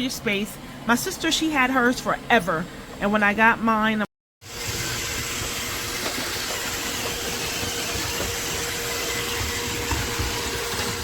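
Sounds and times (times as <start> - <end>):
robot vacuum whirring: 4.4 - 11.0.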